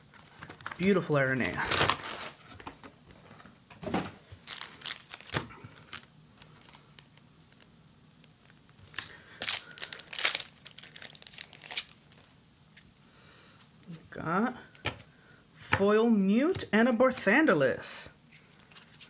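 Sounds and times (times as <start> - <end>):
wrapper crinkling and tearing: 0.6 - 2.4, 4.4 - 12.4.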